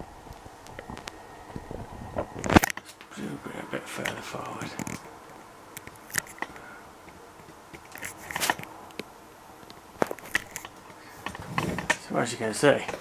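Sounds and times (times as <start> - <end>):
object handling clicks and knocks: 4.0 - 12.0
light scraping: 7.8 - 8.7.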